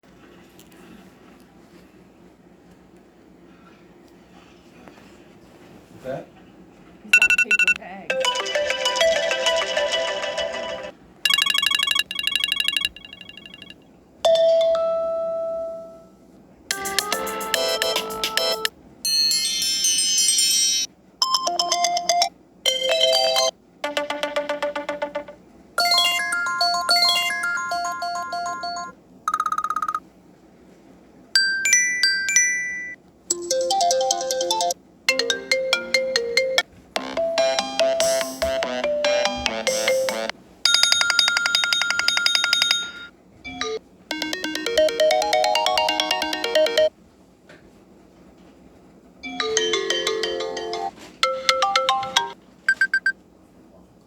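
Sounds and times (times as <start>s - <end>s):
rapid beeping pulses: 7.1s - 13.8s
chiming ringtone melody: 7.2s - 16.1s, 16.7s - 30.0s, 31.4s - 36.6s, 37.2s - 46.9s, 49.3s - 53.0s.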